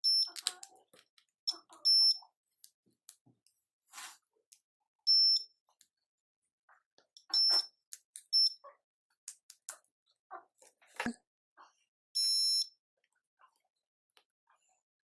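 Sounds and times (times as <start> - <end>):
small clicks and taps: 0.3 - 1.4, 9.2 - 9.9.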